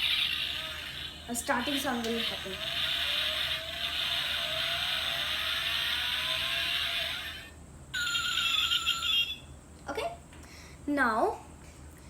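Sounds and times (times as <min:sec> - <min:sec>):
high-pitched electronic toy sound: 0:00.0 - 0:09.4
tinny toy engine sound: 0:00.0 - 0:09.4.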